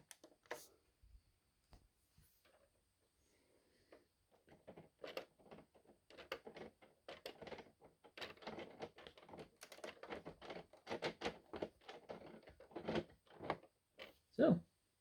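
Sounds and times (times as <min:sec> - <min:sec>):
plastic bricks clicking: 0:04.4 - 0:14.1.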